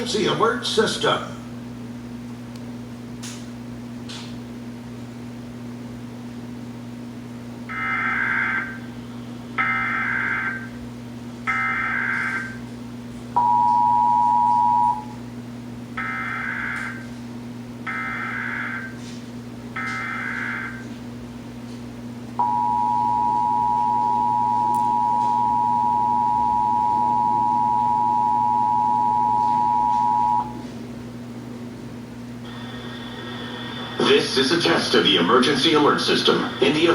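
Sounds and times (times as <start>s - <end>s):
two-tone attention signal: 22.4s - 30.6s
low hum: 22.4s - 30.7s, 32.4s - 36.9s.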